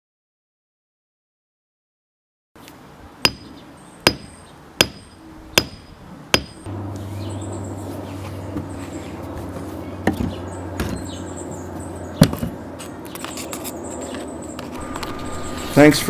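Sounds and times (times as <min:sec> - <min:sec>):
hammer striking steel wedge: 0:04.1 - 0:06.7
steady low hum: 0:14.7 - 0:16.0.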